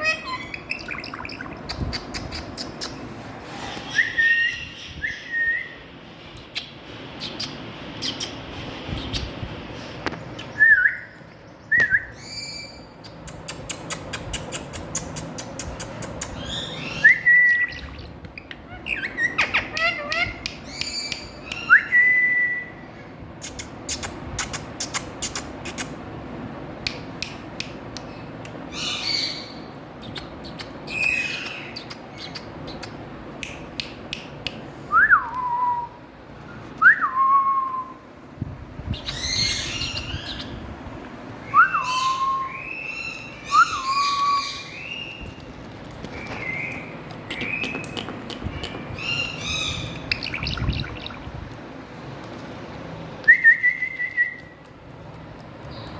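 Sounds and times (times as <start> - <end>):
parrot whistling and squawking: 0.0 - 1.8, 3.6 - 5.8, 16.4 - 22.3, 41.6 - 45.2, 48.9 - 51.3.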